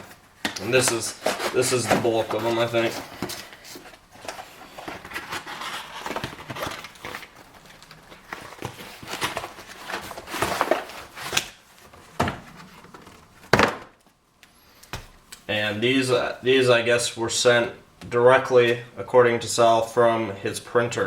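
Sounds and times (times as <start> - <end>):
packaging rustling and crinkling: 0.0 - 14.2.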